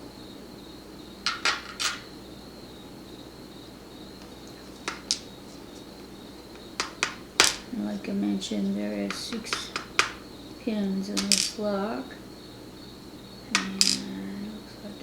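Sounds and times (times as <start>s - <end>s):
small metal clicks and taps: 4.2s - 5.3s, 6.8s - 7.7s, 9.1s - 10.2s.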